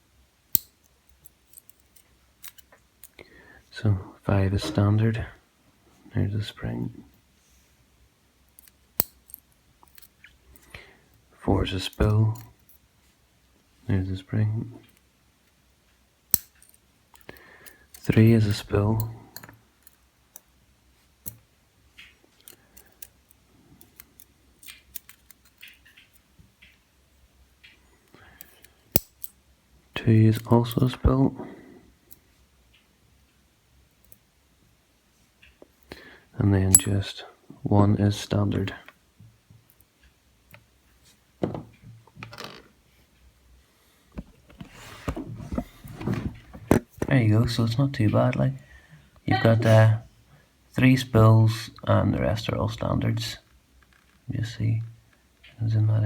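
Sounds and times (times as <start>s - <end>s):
small metal clicks: 0.5s - 3.2s, 16.3s - 18.2s, 22.0s - 26.8s, 28.4s - 29.4s.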